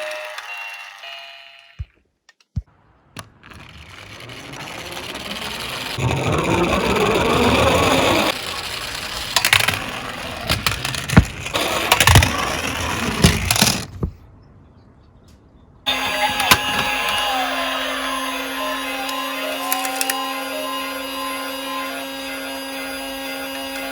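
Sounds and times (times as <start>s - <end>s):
toy cars rattling down a slope: 0.0s - 1.4s, 3.3s - 14.0s, 15.9s - 23.9s
toy cars knocking: 3.2s - 14.2s, 15.9s - 18.1s, 18.8s - 20.5s
hum with sliding siren tone: 3.4s - 8.4s, 15.9s - 23.9s.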